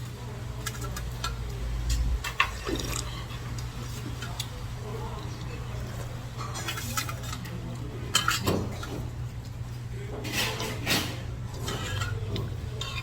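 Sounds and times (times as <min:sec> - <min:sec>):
utensils clinking on dishes: 0:00.0 - 0:04.6, 0:05.3 - 0:09.2, 0:10.1 - 0:13.0
steady low hum: 0:00.0 - 0:07.0.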